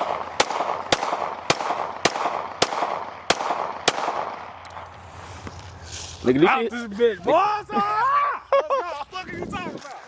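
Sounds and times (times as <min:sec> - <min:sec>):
gunshots with short echo: 0:00.0 - 0:04.5.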